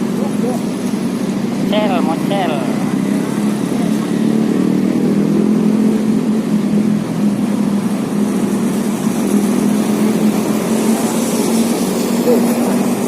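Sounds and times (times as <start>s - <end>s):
engine droning steadily: 0.0s - 13.0s.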